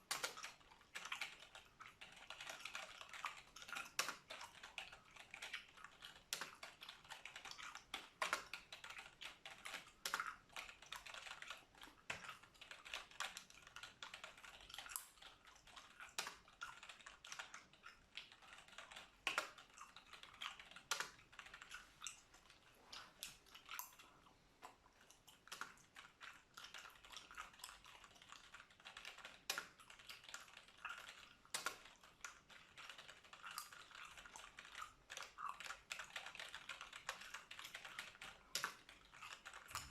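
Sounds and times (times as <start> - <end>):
keyboard typing: 0.1 - 24.0, 25.3 - 39.9
gum chewing: 14.6 - 39.9.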